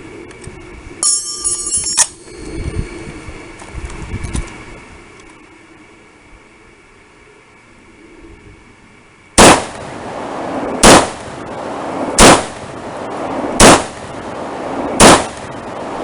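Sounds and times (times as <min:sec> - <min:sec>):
rifle shots with echo: 0:09.4 - 0:16.0.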